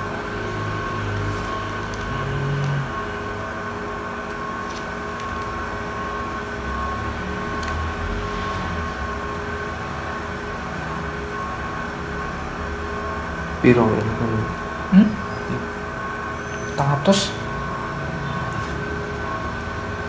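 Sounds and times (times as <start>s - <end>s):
whining tones: 0.0s - 4.6s
background hum: 0.0s - 20.0s.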